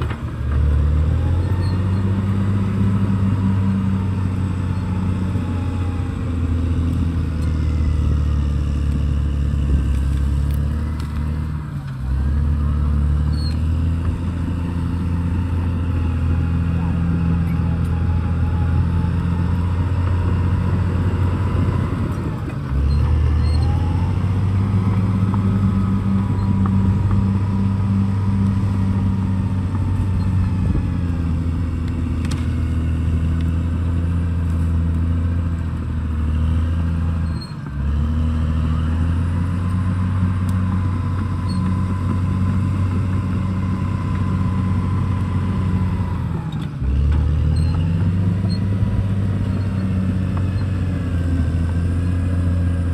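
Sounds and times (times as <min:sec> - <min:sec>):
bulldozer diesel engine running: 0:00.0 - 0:52.9.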